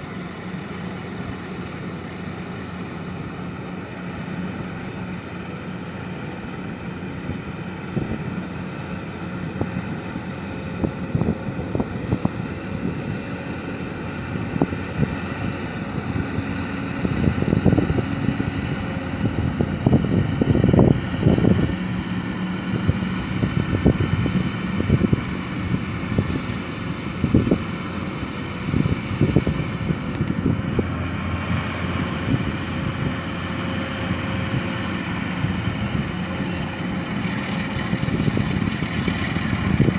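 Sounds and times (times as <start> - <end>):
engine running: 0.0 - 39.9.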